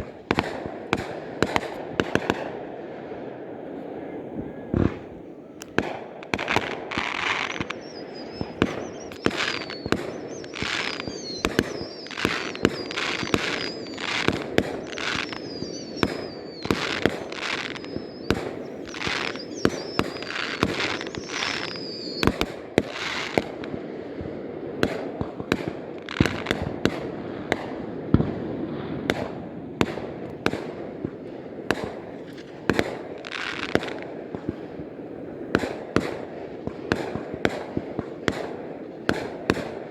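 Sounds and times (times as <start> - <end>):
fireworks bangs: 0.0 - 39.9
fireworks crackling: 0.0 - 39.9
high wavering whistle: 7.1 - 22.4.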